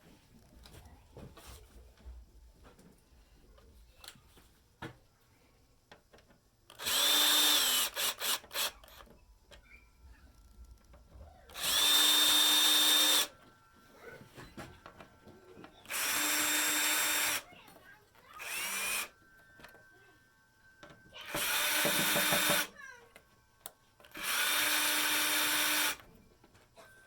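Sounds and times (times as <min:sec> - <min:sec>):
drill trigger taps: 0:06.7 - 0:09.0, 0:11.5 - 0:13.3, 0:15.8 - 0:17.4, 0:18.4 - 0:19.1, 0:21.2 - 0:22.7, 0:23.6 - 0:26.1
power drill whining: 0:06.7 - 0:09.8, 0:11.0 - 0:26.2.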